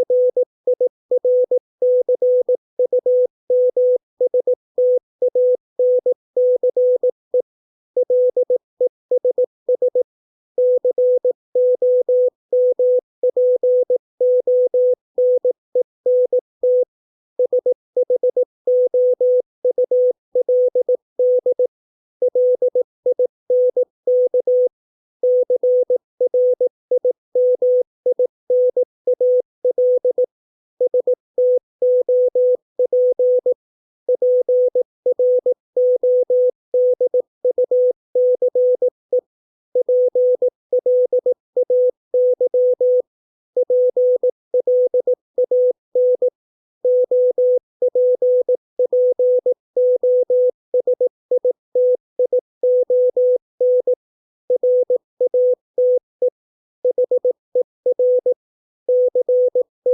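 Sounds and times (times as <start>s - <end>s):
morse code beeps: 39.8s - 46.3s, 46.9s - 59.9s.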